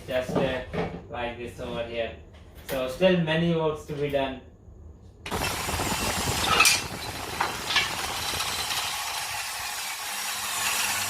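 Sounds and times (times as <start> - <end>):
power tool motor humming: 5.3 - 11.0.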